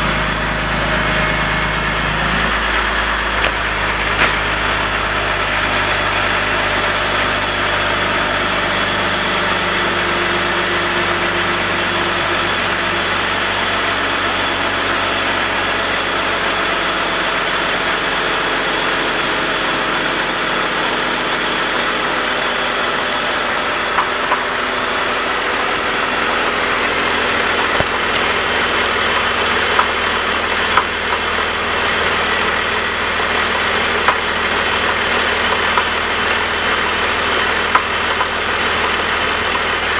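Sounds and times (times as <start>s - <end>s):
car engine idling: 0.0s - 39.9s
galloping clanking engine noise: 22.0s - 39.9s.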